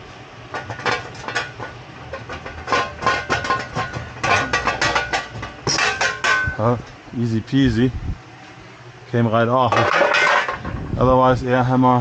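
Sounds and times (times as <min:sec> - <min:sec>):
metal knocks and clinks: 0:00.6 - 0:06.6, 0:09.7 - 0:10.8.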